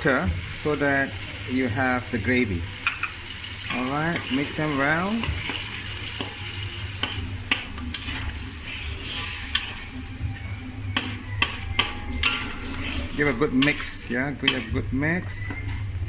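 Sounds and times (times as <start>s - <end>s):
food sizzling in a pan: 0.0s - 16.0s
spatula knocking pan: 10.9s - 12.6s, 13.3s - 14.9s.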